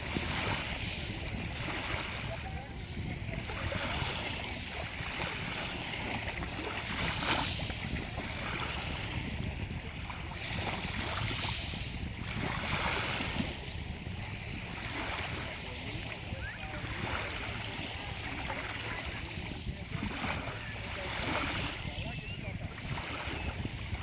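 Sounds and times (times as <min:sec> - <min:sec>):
stream water rushing: 0:00.0 - 0:02.7, 0:12.4 - 0:22.6.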